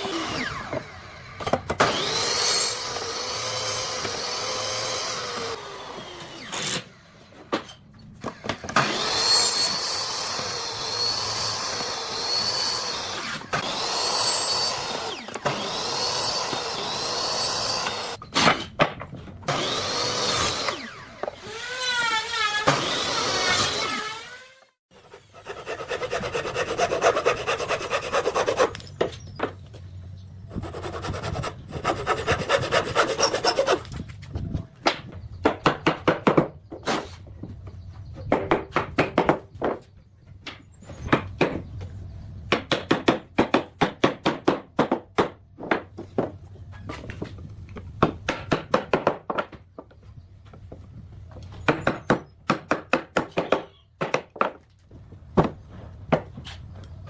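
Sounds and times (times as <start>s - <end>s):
hand tool rasping wood: 25.0s - 28.8s, 30.5s - 34.0s.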